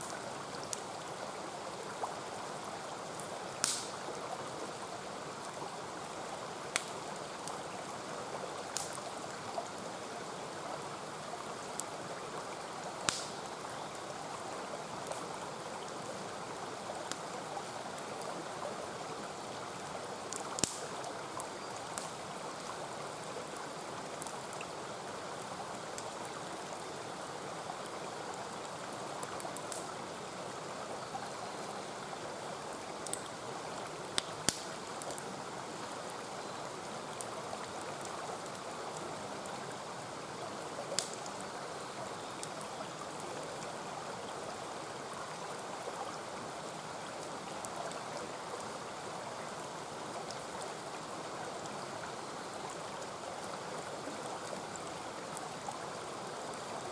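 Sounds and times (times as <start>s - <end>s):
campfire pops and crackles: 3.1s - 4.1s, 6.7s - 7.6s, 8.6s - 9.2s, 13.0s - 13.6s, 15.0s - 15.3s, 17.1s - 17.3s, 20.3s - 22.2s, 24.2s - 24.6s, 29.2s - 30.0s, 32.9s - 33.4s, 34.1s - 35.3s, 41.0s - 41.4s.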